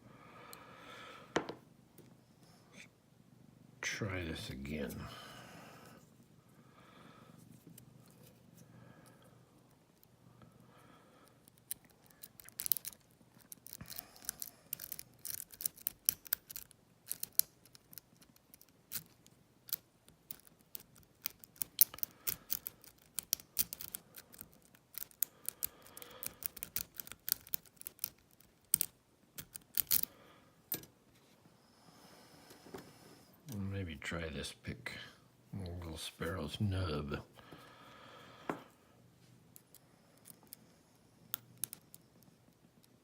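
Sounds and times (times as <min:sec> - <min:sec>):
lock pick clicks and scrapes: 0:11.4 - 0:30.1.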